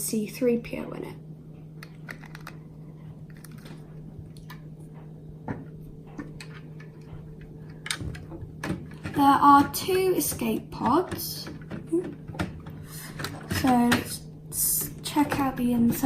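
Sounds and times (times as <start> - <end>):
steady low hum: 0.0 - 16.0
plastic lego pieces clicking: 1.8 - 2.6.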